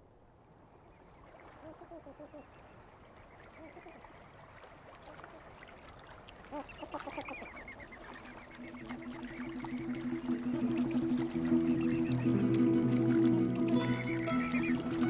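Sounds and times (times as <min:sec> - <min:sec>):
flamingos honking: 0:07.3 - 0:15.0
music: 0:09.4 - 0:15.0.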